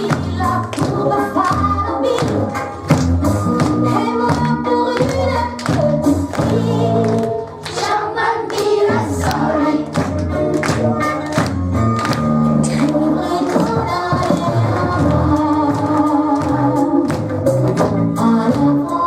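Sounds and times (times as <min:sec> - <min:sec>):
woman singing: 0:00.0 - 0:02.7, 0:03.7 - 0:07.3, 0:12.6 - 0:17.2, 0:18.2 - 0:19.0.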